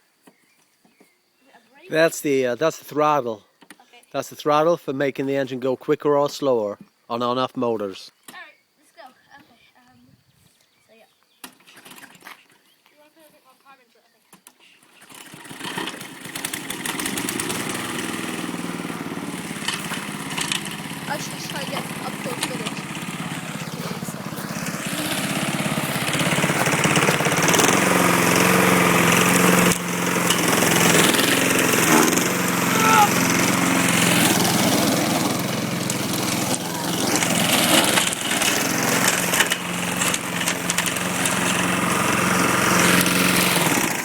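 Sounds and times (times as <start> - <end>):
lawn mower engine running: 14.8 - 44.0.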